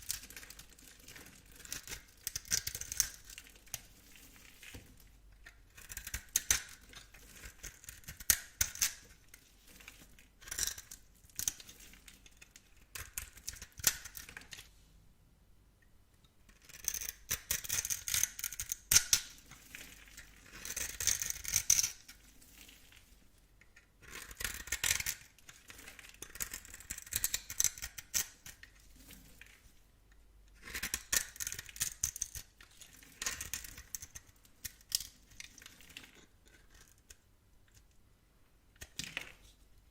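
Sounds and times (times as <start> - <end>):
blade cutting through soap: 0.0 - 3.8, 5.4 - 9.2, 16.5 - 19.3, 30.6 - 32.4.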